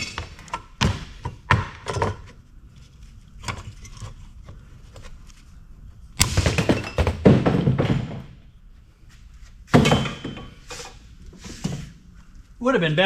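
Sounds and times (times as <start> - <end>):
heavy metal thunks: 6.2 - 8.4.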